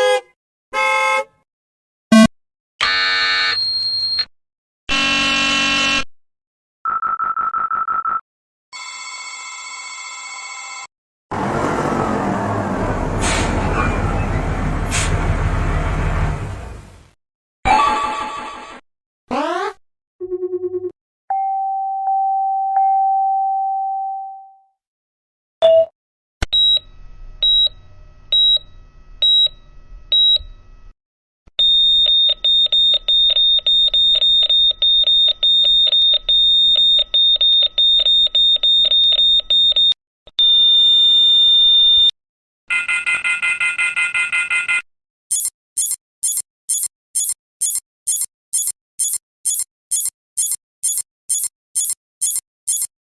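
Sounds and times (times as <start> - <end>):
electronic beeps: 45.3 - 52.9
warbling alarm beep: 45.3 - 52.9.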